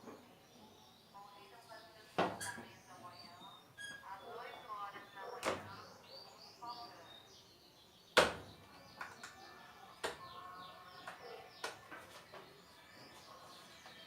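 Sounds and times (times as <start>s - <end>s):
birds chirping: 0.0s - 14.0s.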